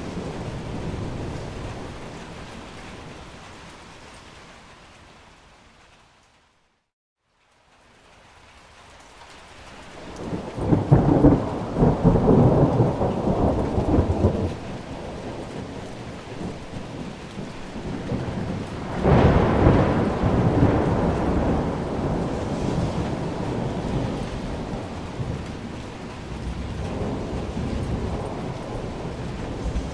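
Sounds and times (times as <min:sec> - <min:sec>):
thunder rumbling: 0:00.0 - 0:03.2, 0:10.0 - 0:29.9
rain: 0:00.0 - 0:29.9.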